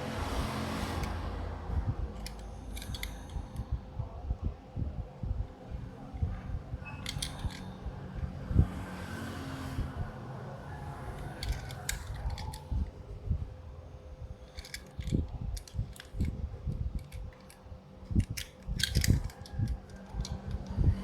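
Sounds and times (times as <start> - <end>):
faint steady hum: 0.0 - 21.0
soft low thumps: 3.6 - 7.0
toy packaging clicks and taps: 11.2 - 12.7, 18.2 - 20.8.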